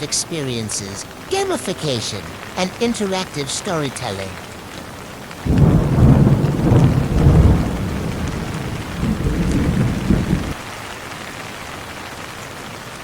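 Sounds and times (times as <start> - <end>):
steady rain: 0.0 - 13.0
thunder rumbling: 5.1 - 10.6.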